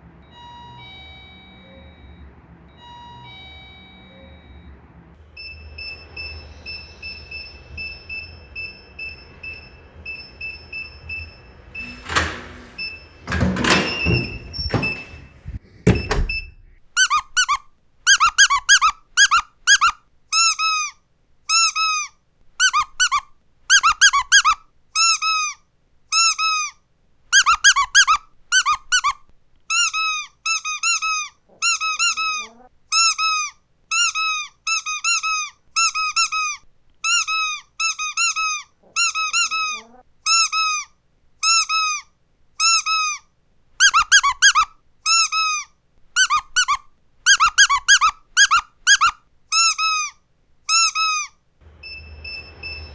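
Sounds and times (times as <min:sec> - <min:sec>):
loud thumps: 0:13.3 - 0:16.8
squeaky dog toy squeaking: 0:16.4 - 0:43.2, 0:43.8 - 0:51.4.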